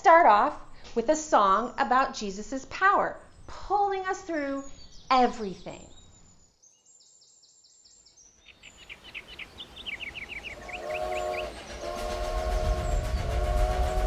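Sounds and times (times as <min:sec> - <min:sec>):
faint bird chirps: 0:04.6 - 0:11.6
locomotive rumble: 0:08.6 - 0:14.0
steam train chime whistle: 0:08.8 - 0:14.0.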